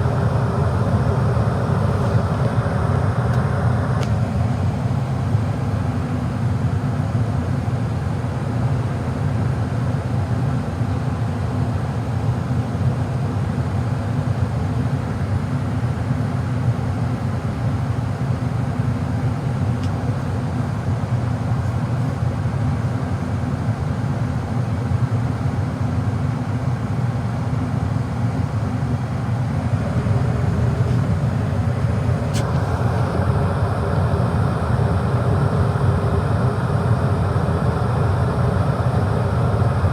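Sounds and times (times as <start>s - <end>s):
gas furnace rumbling: 0.0s - 5.5s, 27.0s - 39.9s.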